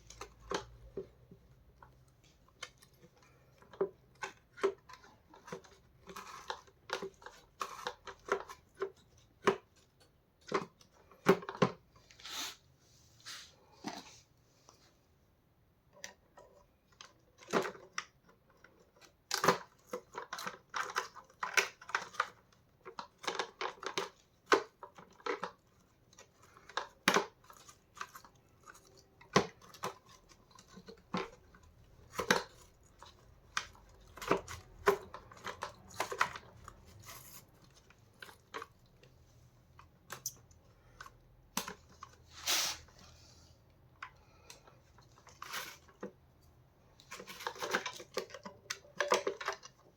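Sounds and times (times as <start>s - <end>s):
plastic parts clicking and knocking: 0.0s - 12.2s, 15.8s - 42.3s, 43.7s - 49.9s
short rattling scrapes: 42.3s - 43.3s.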